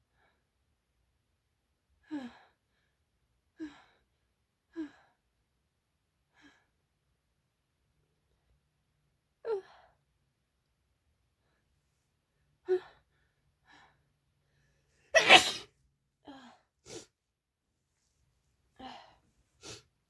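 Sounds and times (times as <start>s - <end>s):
person sneezing: 15.2s - 15.7s.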